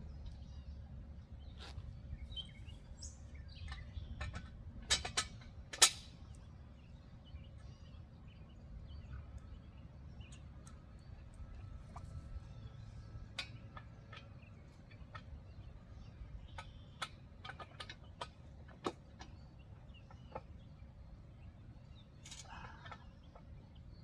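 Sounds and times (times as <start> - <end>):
metal parts clicking and tapping: 22.2 - 22.6.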